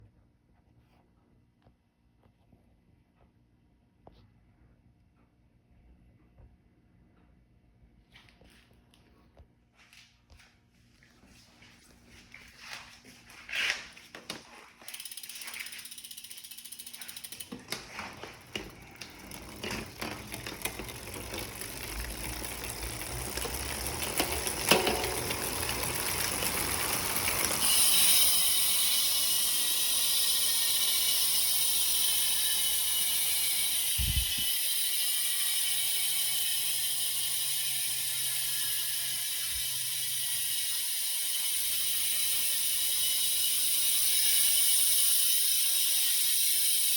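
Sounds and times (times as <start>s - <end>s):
bicycle freehub ratchet buzz: 14.8s - 46.9s.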